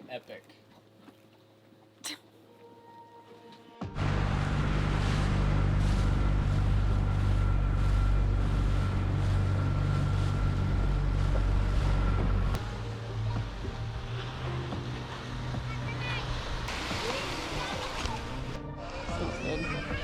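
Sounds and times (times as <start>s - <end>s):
boat motor running: 3.8s - 18.6s
wind and water rushing: 4.0s - 18.6s.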